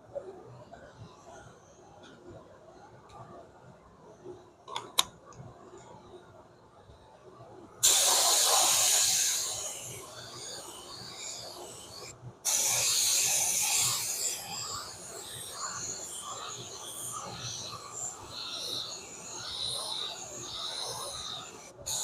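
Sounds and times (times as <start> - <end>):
spray paint hissing: 7.8 - 22.0.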